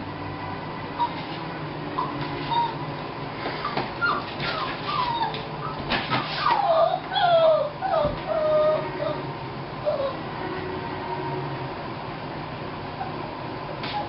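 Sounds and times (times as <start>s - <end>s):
dog whimpering: 1.0s - 1.4s, 2.0s - 2.8s, 3.6s - 10.2s, 13.0s - 13.2s.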